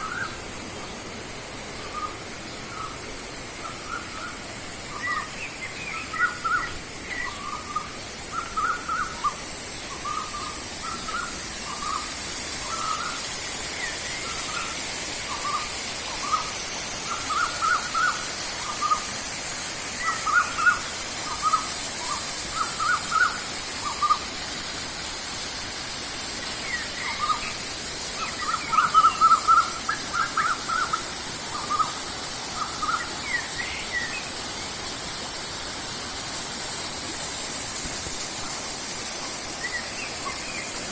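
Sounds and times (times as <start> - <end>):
steady high hiss: 0.0 - 40.9
birds calling: 1.7 - 19.2, 19.8 - 24.3, 26.4 - 34.8.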